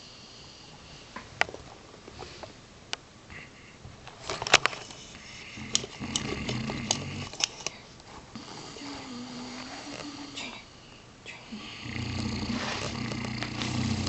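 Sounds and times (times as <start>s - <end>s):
dog snoring: 5.2s - 7.4s, 8.4s - 10.5s, 11.5s - 14.0s.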